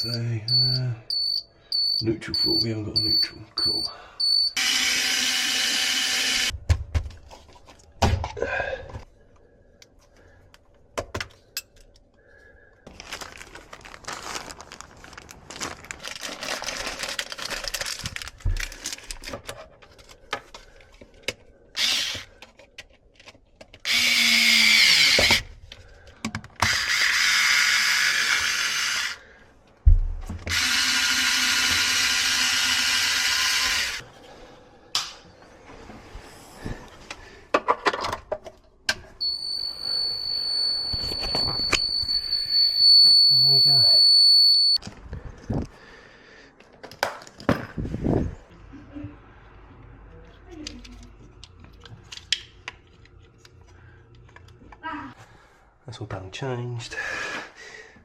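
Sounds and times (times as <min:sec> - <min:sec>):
power drill running: 0:04.6 - 0:06.5, 0:21.8 - 0:22.3, 0:23.9 - 0:25.4, 0:26.6 - 0:29.2, 0:30.5 - 0:34.0.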